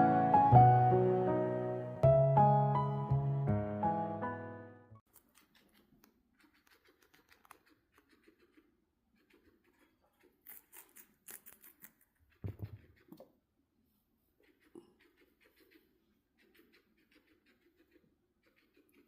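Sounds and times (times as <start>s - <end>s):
guinea pig chewing crunchily: 5.1s - 8.6s, 9.2s - 13.2s.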